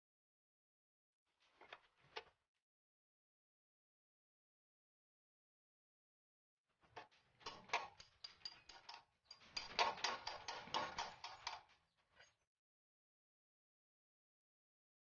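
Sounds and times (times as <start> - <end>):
sharp mechanical clicks: 7.5 - 11.6.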